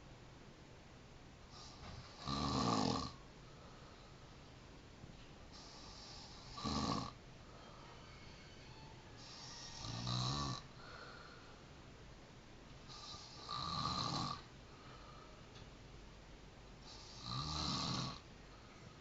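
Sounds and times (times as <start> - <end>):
low steady background: 0.0 - 19.0
person snoring: 1.5 - 3.2, 5.6 - 7.2, 9.2 - 11.3, 12.9 - 14.5, 16.8 - 18.2.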